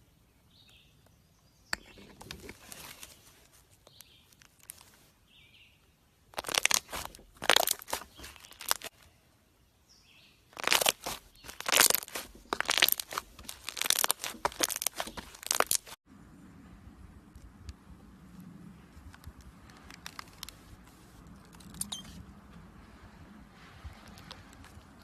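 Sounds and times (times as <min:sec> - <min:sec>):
slime squished by hand: 0:06.4 - 0:08.9, 0:10.6 - 0:16.0.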